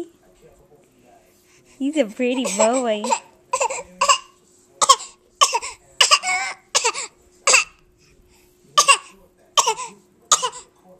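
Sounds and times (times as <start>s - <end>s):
baby fake coughing: 2.4s - 7.8s, 8.8s - 10.7s.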